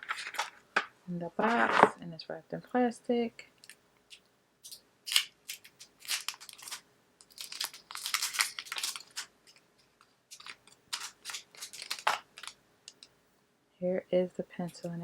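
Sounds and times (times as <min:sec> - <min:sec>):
plastic wrap crinkling and tearing: 0:00.0 - 0:00.6, 0:04.6 - 0:13.0.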